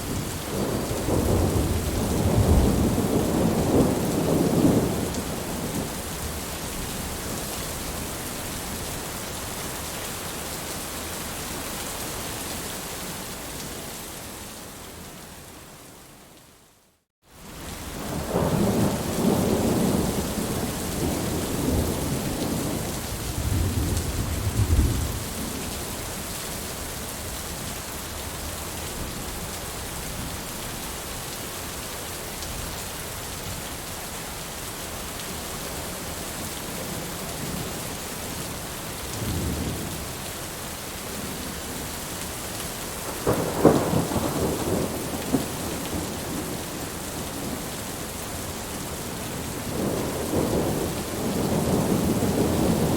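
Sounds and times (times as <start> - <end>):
rolling thunder: 0.0 - 7.2, 18.0 - 25.6, 43.1 - 47.8, 49.3 - 52.9
heavy rain: 0.0 - 52.9.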